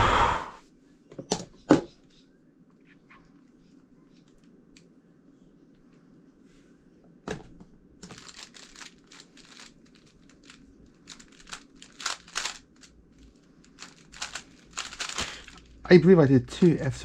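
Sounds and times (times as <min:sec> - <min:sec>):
speed cube clicking: 0:08.2 - 0:12.9, 0:13.8 - 0:15.6.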